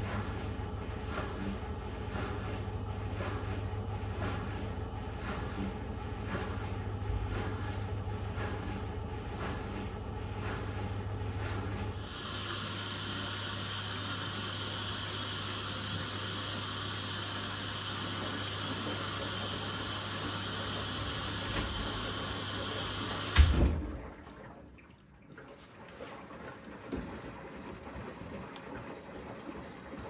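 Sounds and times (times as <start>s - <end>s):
water rushing into washing machine: 0.0s - 30.0s
thump: 23.4s - 23.9s.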